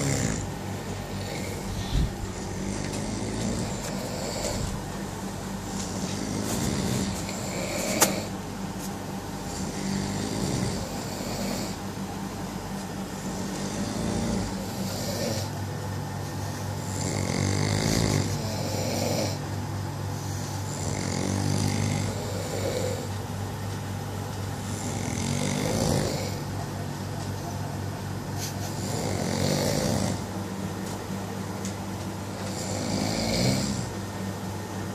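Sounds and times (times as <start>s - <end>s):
person snoring: 0.0s - 4.9s, 6.0s - 8.4s, 9.5s - 11.8s, 13.2s - 15.6s, 16.8s - 19.4s, 20.1s - 23.1s, 24.6s - 26.5s, 28.5s - 30.3s, 32.3s - 34.0s
steady low hum: 0.0s - 34.9s.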